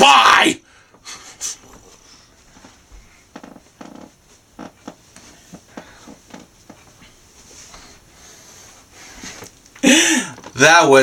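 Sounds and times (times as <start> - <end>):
low hiss: 0.0 - 11.0
soft handling taps and rustles: 1.6 - 8.1, 8.8 - 10.6.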